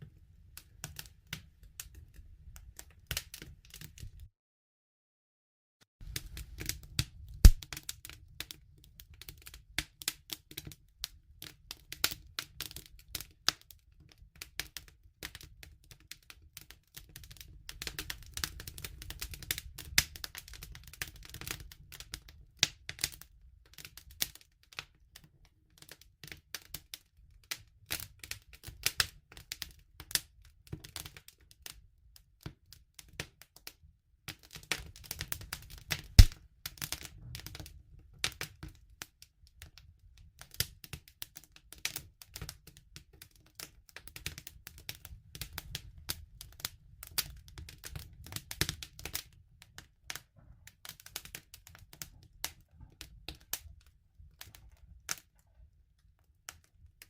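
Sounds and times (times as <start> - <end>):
wood fire crackling: 0.5 - 4.3, 6.0 - 24.9, 34.3 - 39.0, 40.4 - 55.5.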